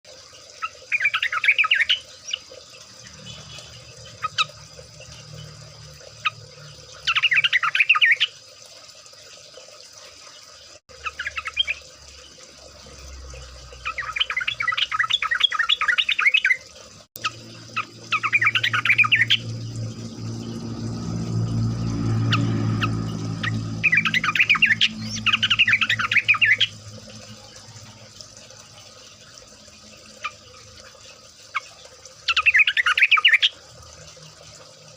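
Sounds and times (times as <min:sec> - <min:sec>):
low rumble: 0:18.0 - 0:27.1.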